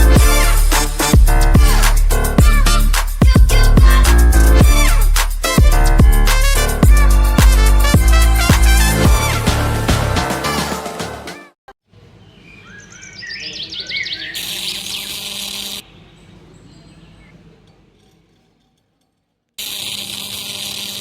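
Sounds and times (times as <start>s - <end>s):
birds chirping: 12.0s - 17.6s.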